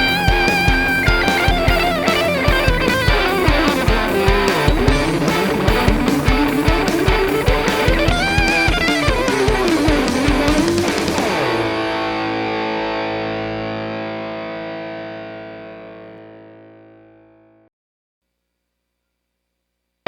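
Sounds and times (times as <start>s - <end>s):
overdriven electric guitar riff: 0.0s - 17.6s.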